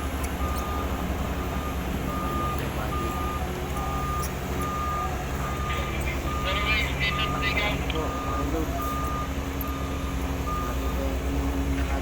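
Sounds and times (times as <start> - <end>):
diesel engine running: 0.0 - 12.0
backup alarm beeping: 0.4 - 11.0.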